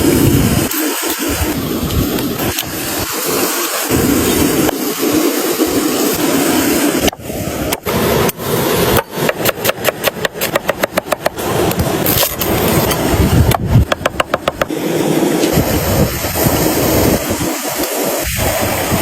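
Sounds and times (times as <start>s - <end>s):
steady loud hiss: 0.0s - 19.0s
rapid knocks: 9.2s - 11.4s, 13.5s - 14.7s.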